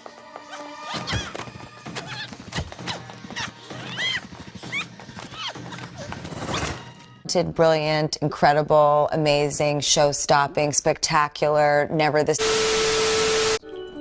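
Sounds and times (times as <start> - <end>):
music: 0.0 - 7.9, 13.6 - 14.0
horse whinnying: 0.4 - 6.8.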